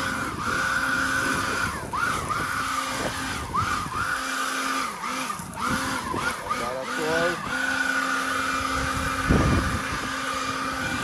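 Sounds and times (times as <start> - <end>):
leaf blower motor whine: 0.0 - 11.0
rush of air: 7.4 - 11.0.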